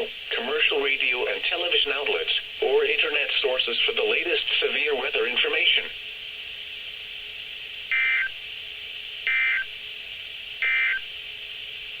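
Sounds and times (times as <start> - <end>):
radio static: 0.0 - 6.0
buzzy digital data tones: 7.9 - 8.4, 10.6 - 11.1.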